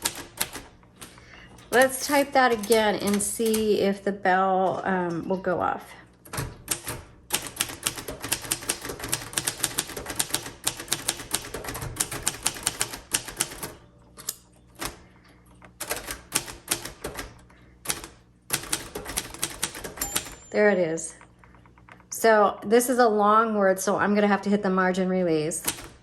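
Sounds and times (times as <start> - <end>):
manual typewriter typing: 0.0 - 1.1, 1.7 - 3.8, 6.2 - 15.1, 15.8 - 20.6, 25.6 - 26.0.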